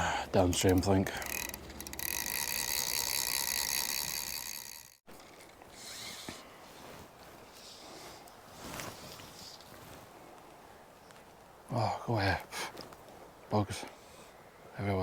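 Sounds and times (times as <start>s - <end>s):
fly reel ratchet buzzing: 0.6s - 5.0s.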